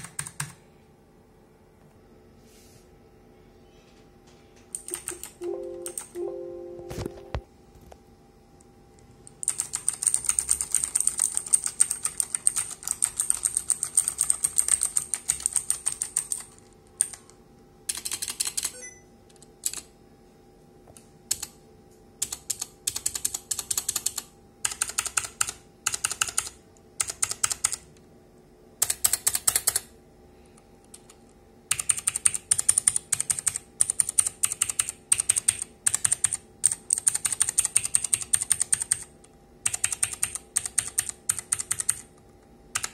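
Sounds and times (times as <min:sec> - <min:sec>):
mechanical keyboard typing: 0:00.0 - 0:00.6, 0:04.7 - 0:06.2, 0:09.4 - 0:18.8, 0:19.6 - 0:19.9, 0:21.3 - 0:21.6, 0:22.2 - 0:27.9, 0:28.8 - 0:29.9, 0:30.9 - 0:42.1.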